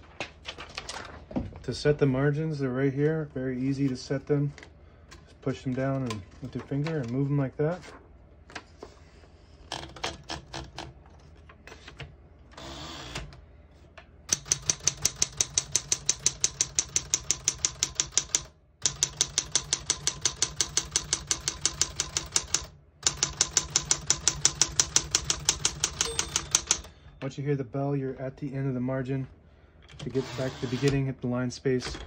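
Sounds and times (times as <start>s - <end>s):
manual typewriter keystrokes: 9.7s - 10.9s, 14.3s - 27.0s.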